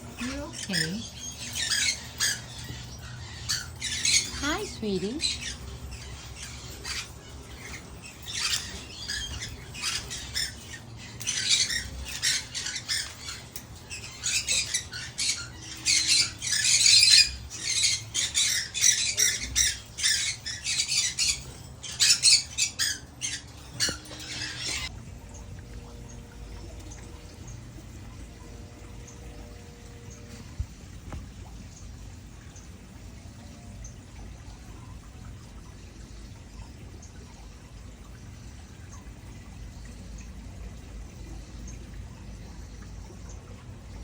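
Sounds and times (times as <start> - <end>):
parrot squawking: 0.2 - 24.9.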